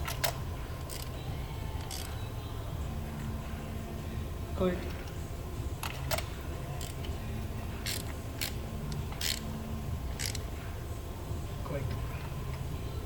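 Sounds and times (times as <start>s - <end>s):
ratchet wrench ratcheting: 0.0s - 1.2s, 1.8s - 2.2s, 5.8s - 7.2s, 7.8s - 9.5s, 10.1s - 10.5s.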